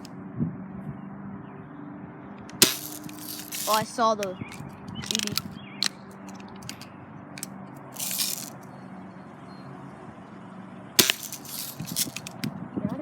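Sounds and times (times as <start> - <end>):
brief rustle: 2.5 - 6.9, 8.0 - 8.6, 11.0 - 12.5.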